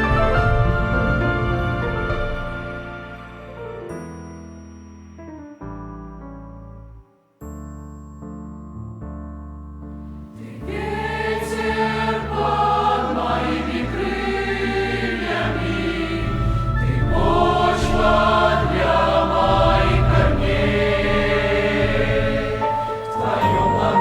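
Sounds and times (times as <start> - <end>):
youth choir singing: 10.4 - 24.0.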